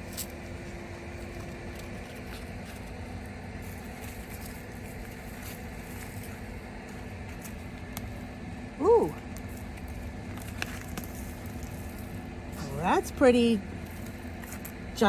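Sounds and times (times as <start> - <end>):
outdoor background hum: 0.0 - 15.0
soil being dug by hand: 9.1 - 15.0.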